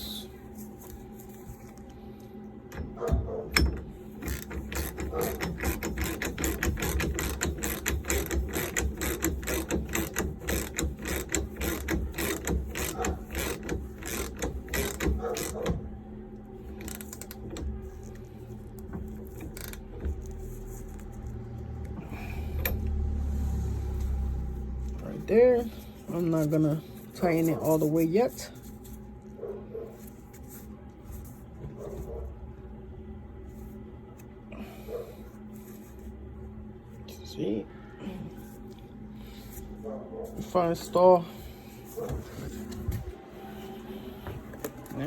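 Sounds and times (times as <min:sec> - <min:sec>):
ratchet clicking: 0:02.7 - 0:15.8.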